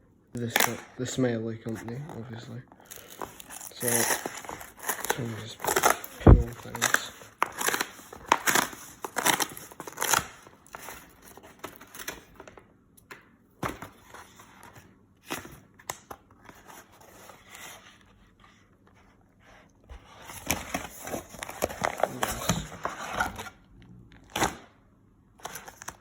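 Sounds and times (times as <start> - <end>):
packaging tearing and crumpling: 2.8 - 12.2.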